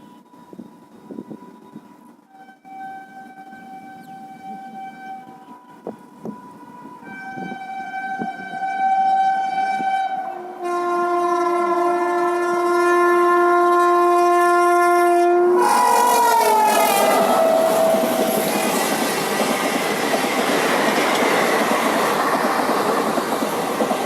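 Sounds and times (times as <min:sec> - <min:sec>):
train horn: 0:00.0 - 0:19.4
train rushing past: 0:15.0 - 0:24.0
wheels on rails: 0:15.6 - 0:24.0.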